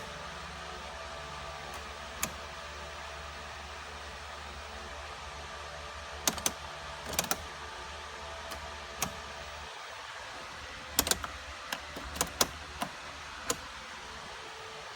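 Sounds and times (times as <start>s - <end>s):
sharp electrical clicks: 0.0s - 2.8s, 6.2s - 7.7s, 8.4s - 9.7s, 10.3s - 14.4s
steady electrical hum: 0.0s - 14.9s.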